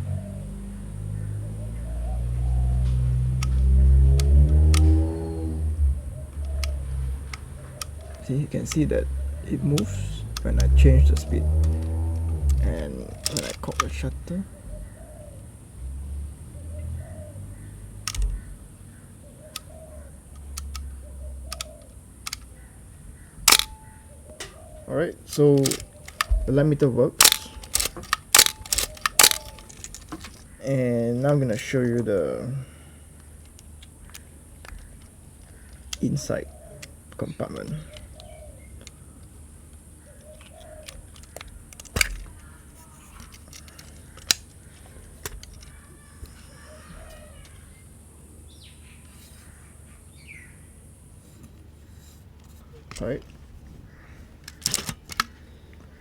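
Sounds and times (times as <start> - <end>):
camera mechanical clicks: 2.9 - 5.2, 6.3 - 14.3, 18.0 - 18.5, 20.3 - 22.6, 23.5 - 24.0, 25.3 - 26.6, 27.2 - 30.6.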